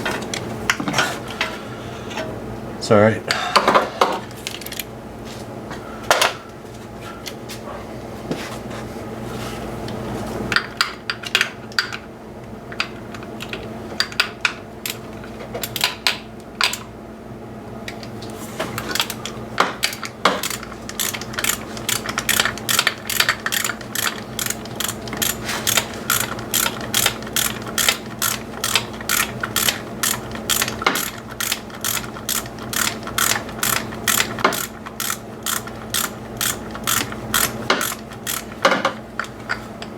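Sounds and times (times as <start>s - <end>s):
ratchet wrench clicking: 19.9s - 39.6s.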